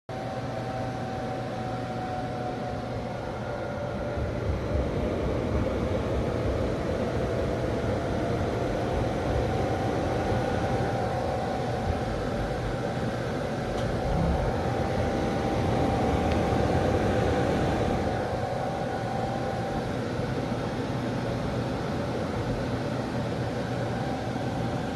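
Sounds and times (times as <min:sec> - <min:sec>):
low mechanical rumble: 0:00.2 - 0:24.9.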